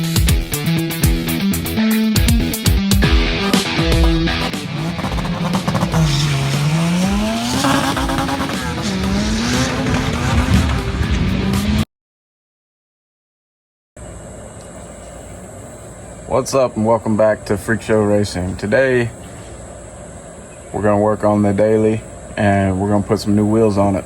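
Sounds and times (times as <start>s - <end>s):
car engine accelerating: 3.0s - 11.8s
tire noise: 3.0s - 11.8s
faint high-pitched whine: 14.0s - 24.0s
steady background hiss: 14.0s - 24.0s.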